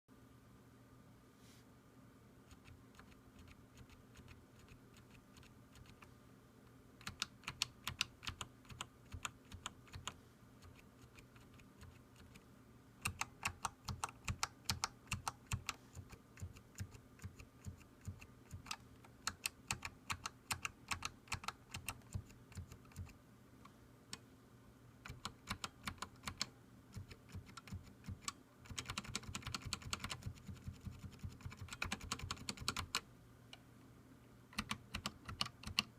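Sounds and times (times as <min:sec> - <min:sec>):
keyboard typing: 0:02.5 - 0:06.1, 0:07.0 - 0:12.4, 0:13.0 - 0:23.2, 0:25.0 - 0:33.0, 0:34.5 - 0:35.9.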